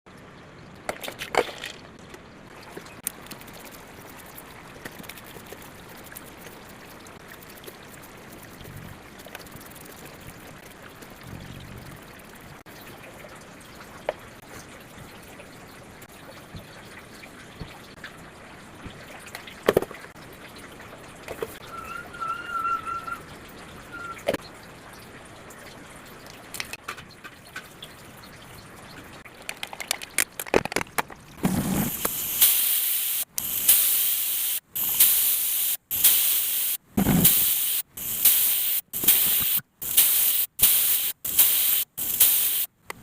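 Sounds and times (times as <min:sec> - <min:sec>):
water trickling: 0:00.1 - 0:31.4.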